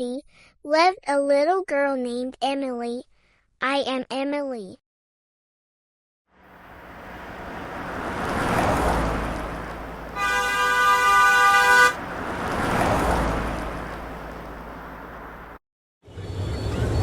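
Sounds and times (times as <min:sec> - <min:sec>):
vehicles passing: 0:06.4 - 0:15.6
car horn honking: 0:09.9 - 0:13.1.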